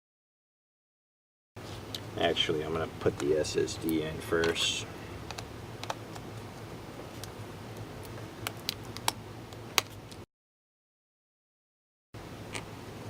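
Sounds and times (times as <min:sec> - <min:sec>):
steady low hum: 0:01.6 - 0:10.2
clicks of small laptop parts: 0:03.2 - 0:06.3.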